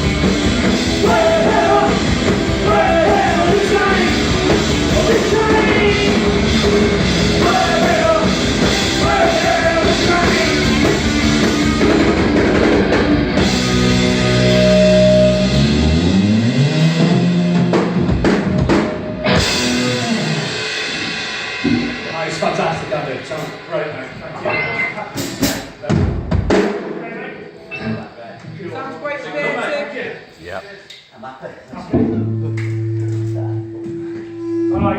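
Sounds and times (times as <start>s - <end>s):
electric guitar: 0.0s - 22.1s
drums: 0.0s - 28.7s, 31.7s - 34.9s
vocals: 0.7s - 11.2s, 21.9s - 28.9s
ringing guitar notes sliding in pitch: 14.1s - 17.6s, 32.2s - 34.9s.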